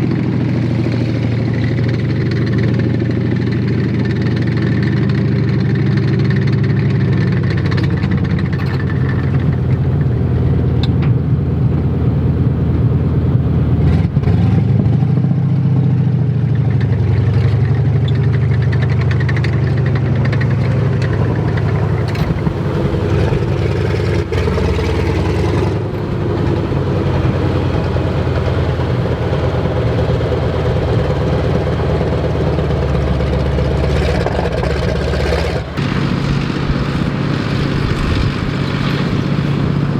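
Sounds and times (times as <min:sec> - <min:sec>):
heavy vehicle engines running: 0:00.0 - 0:39.9.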